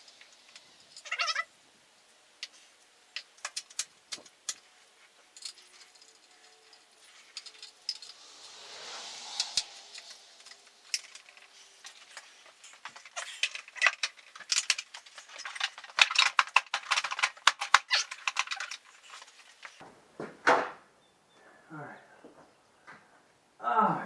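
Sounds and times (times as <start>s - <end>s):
clicks of small hard objects: 9.4s - 19.8s.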